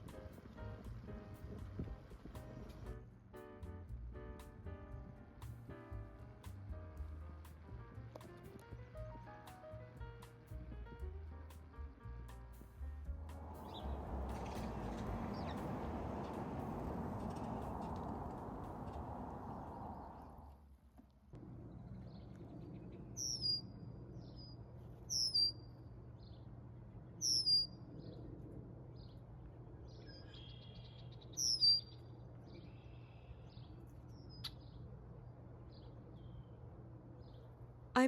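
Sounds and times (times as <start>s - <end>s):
bicycle tyres on a path: 12.8s - 20.3s
wind rushing: 13.4s - 20.5s
songbirds singing: 21.8s - 37.5s
buzzy bird trills: 23.2s - 23.7s, 25.1s - 25.7s, 27.2s - 27.8s, 30.0s - 32.0s
steady low hum: 32.0s - 38.0s.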